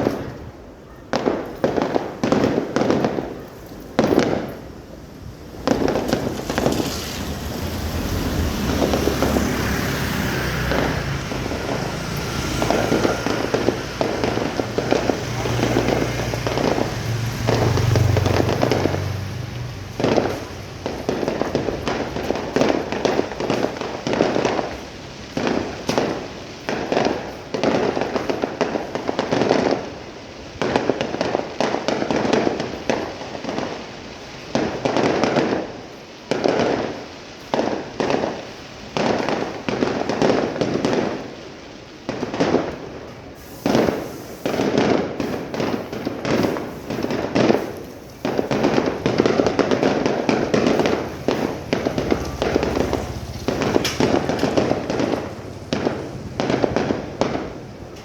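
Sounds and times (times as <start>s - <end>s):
fireworks shells bursting: 0.0s - 58.0s.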